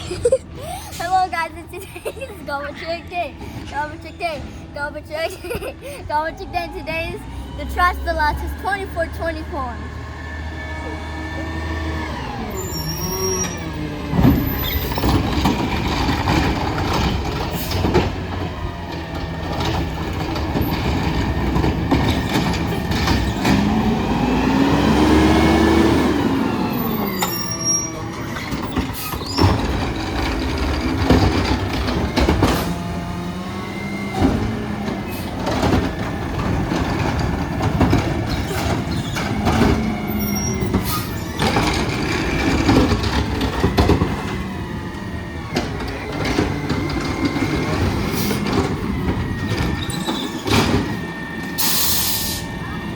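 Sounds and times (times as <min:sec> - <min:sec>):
garbage truck engine whining: 0:00.0 - 0:52.9
high squeals: 0:12.4 - 0:13.8.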